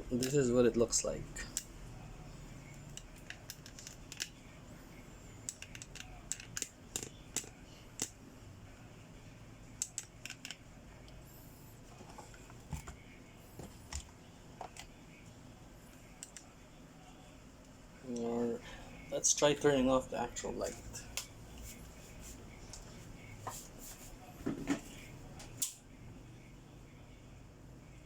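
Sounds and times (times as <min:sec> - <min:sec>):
small plastic parts clicking: 0:02.9 - 0:04.4, 0:05.4 - 0:08.2.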